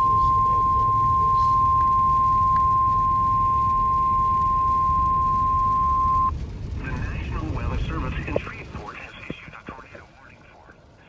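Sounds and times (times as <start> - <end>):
steady high alarm beep: 0.0 - 6.3
low rumble of radio noise: 0.0 - 11.0.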